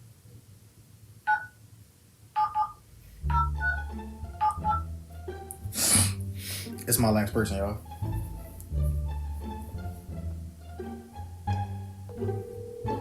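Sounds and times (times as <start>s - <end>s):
phone keypad touch tones: 1.3s - 1.6s, 2.4s - 3.8s, 4.4s - 4.9s
quiet background music: 2.4s - 13.0s.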